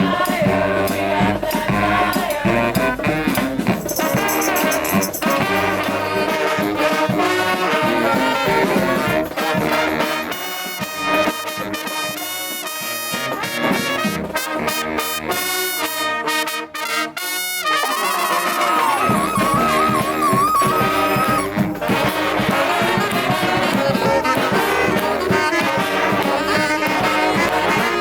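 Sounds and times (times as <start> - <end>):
brass band horns: 0.0 - 28.0
percussion hits: 3.4 - 6.1.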